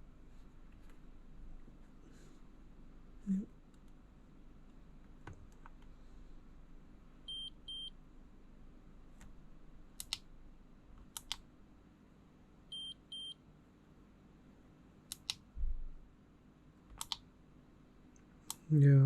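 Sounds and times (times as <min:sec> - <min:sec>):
small double clicks: 0:10.0 - 0:10.2, 0:11.2 - 0:11.4, 0:15.1 - 0:15.4, 0:16.9 - 0:17.2.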